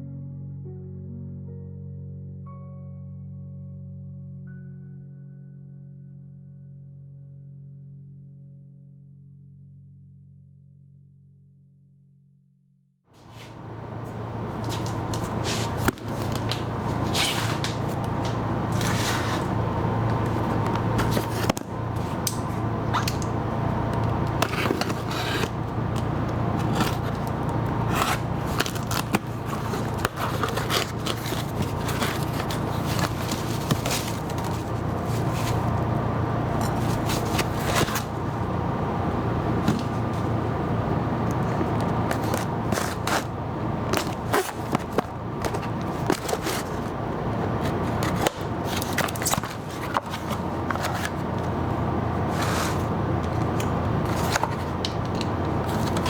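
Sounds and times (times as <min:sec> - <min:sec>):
steady low hum: 0:13.2 - 0:56.0.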